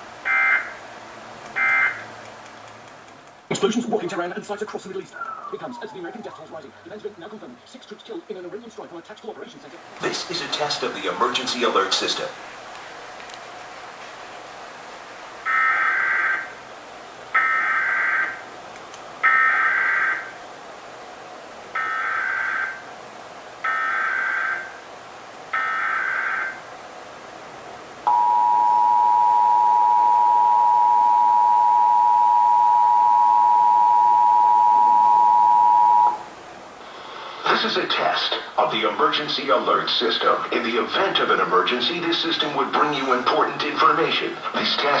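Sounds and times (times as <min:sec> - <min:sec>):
two-tone attention signal: 0:28.1 - 0:36.3.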